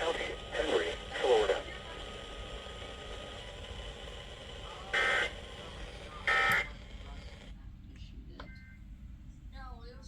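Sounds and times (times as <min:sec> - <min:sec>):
radio hiss: 0:00.0 - 0:03.6.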